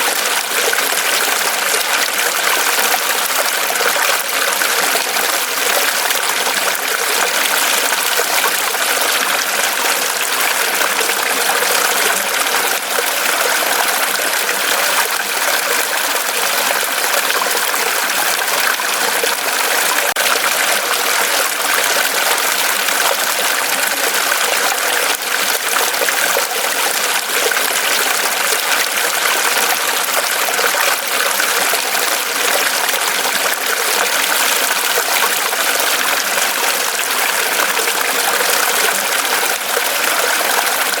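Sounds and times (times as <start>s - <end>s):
stream running over rocks: 0.0s - 41.0s.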